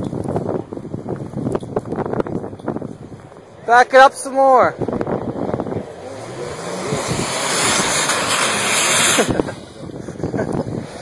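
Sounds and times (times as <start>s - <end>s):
car engine revving: 3.3s - 11.0s
wheels spinning in snow: 4.9s - 11.0s.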